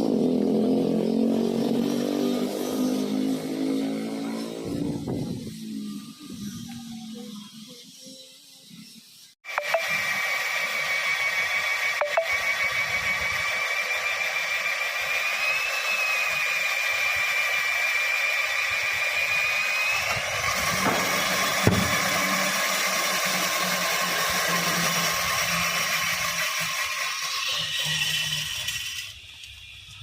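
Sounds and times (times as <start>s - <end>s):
power tool motor whine: 0.0s - 30.0s
sharp knock: 20.8s - 22.0s.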